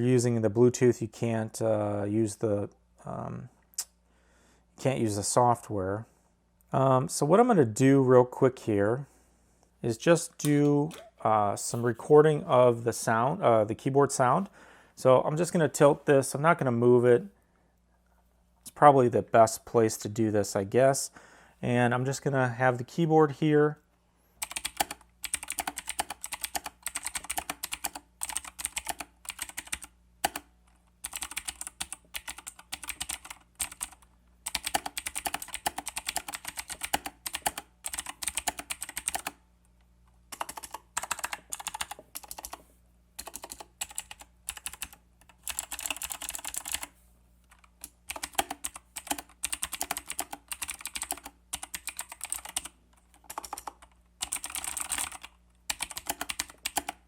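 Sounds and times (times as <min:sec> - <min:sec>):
mechanical keyboard typing: 0:24.4 - 0:39.4, 0:40.3 - 0:42.6, 0:43.2 - 0:46.9, 0:47.5 - 0:57.0.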